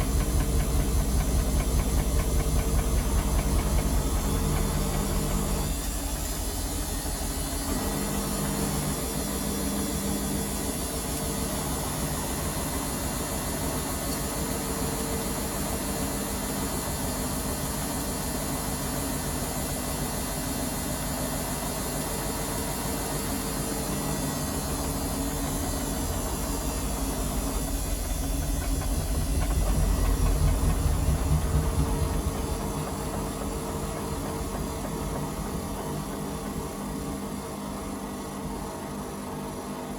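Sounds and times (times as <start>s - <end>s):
washing machine motor humming: 0.0s - 14.4s, 21.5s - 39.9s.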